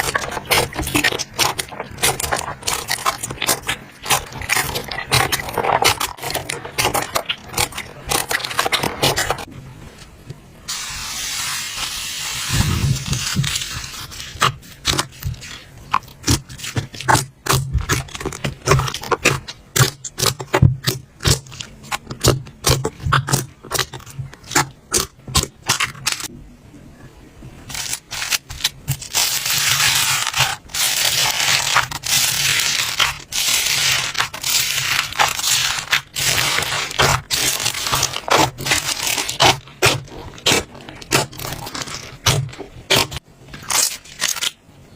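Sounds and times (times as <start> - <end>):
slime crackling and popping: 0.0 - 9.5, 11.3 - 26.3, 27.7 - 44.6
slime scraping hiss: 10.7 - 17.2.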